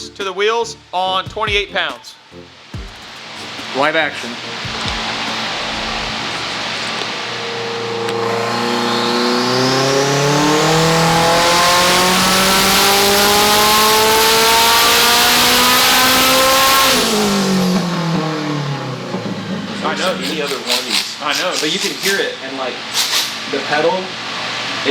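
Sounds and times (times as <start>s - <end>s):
race car engine at full throttle: 3.4s - 20.6s.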